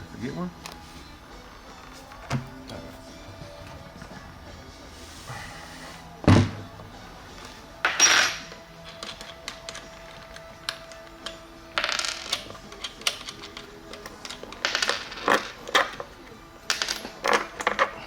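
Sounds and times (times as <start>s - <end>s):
faint background music: 0.0s - 18.0s
metal parts clinking on workbench: 7.8s - 16.1s.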